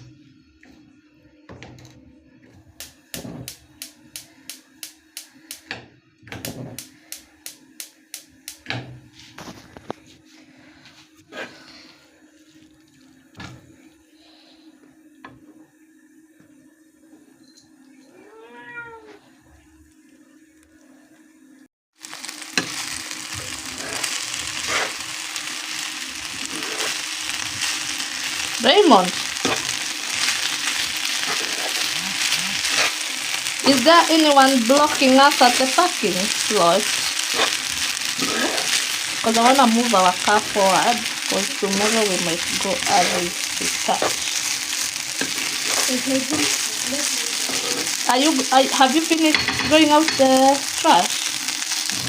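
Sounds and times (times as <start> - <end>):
rice sizzling in a pan: 2.6 - 18.5, 22.0 - 52.0
utensil knocking pan: 49.3 - 50.4.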